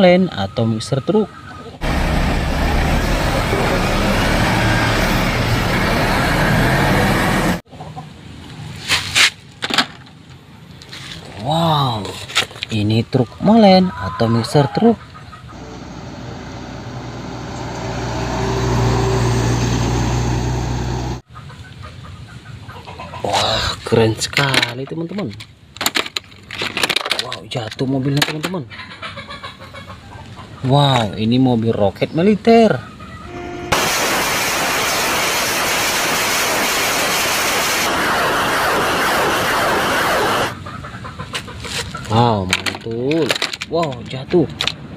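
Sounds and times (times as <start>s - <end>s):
vehicle engine droning: 1.8s - 7.6s, 15.5s - 21.2s
loud rushing hiss: 33.7s - 40.6s.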